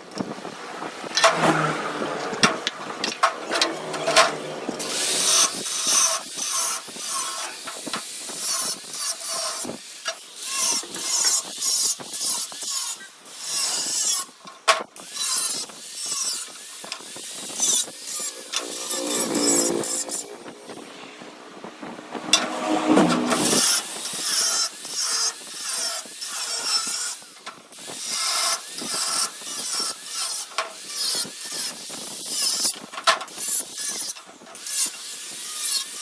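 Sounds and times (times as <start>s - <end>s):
tools rasping and scraping on steel: 1.1s - 36.0s
low droning tone: 17.5s - 24.0s.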